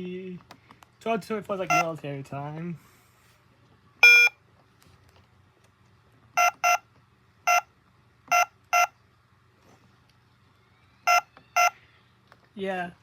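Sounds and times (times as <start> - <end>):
toy atm button beeps: 4.0 - 4.4, 6.4 - 6.9, 7.5 - 7.7, 8.3 - 8.9, 11.1 - 11.8.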